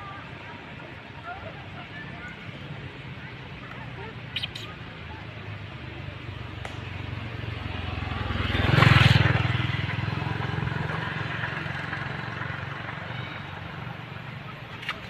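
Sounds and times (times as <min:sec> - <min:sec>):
motor vehicle passing by: 0:02.9 - 0:15.0.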